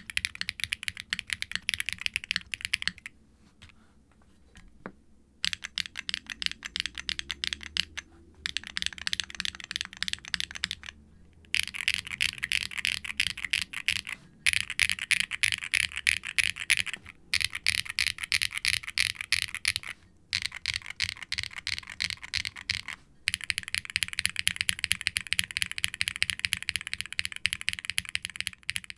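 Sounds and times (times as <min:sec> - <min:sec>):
fast mechanical keyboard typing: 0:00.0 - 0:03.1, 0:05.4 - 0:28.9.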